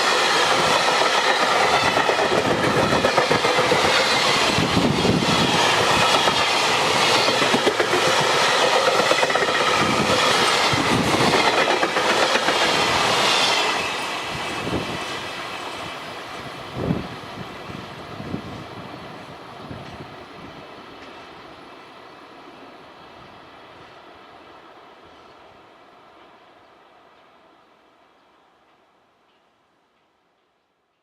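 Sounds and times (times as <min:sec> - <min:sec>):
freight train wheels clattering: 0:00.0 - 0:14.6.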